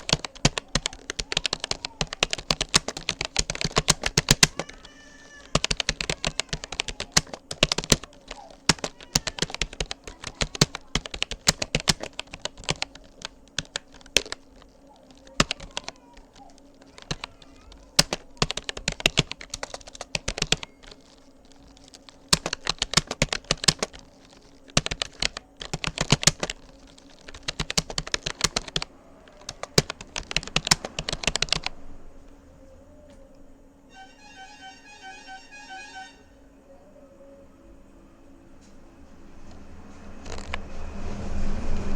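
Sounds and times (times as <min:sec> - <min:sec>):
keyboard typing clicks: 0:00.0 - 0:31.7, 0:39.5 - 0:40.6
faint steady hum: 0:00.0 - 0:41.9.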